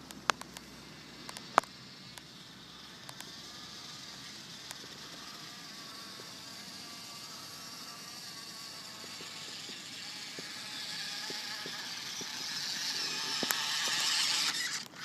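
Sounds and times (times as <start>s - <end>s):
sharp clicks: 0.0s - 2.3s, 9.1s - 15.0s
toy car motor whirring: 0.0s - 15.0s.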